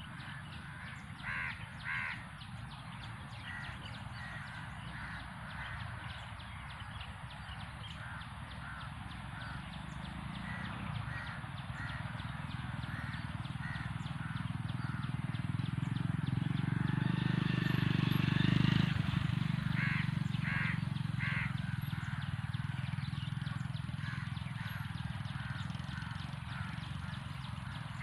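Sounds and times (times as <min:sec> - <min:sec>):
bird calling: 0:00.0 - 0:28.0.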